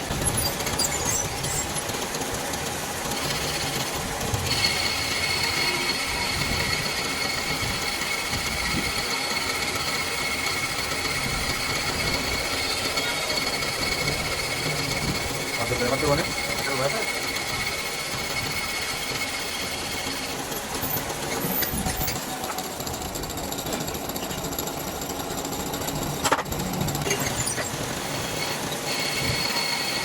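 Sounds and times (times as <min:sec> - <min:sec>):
high-pitched whine: 0:00.0 - 0:02.0
metal lathe rumbling: 0:00.0 - 0:30.0.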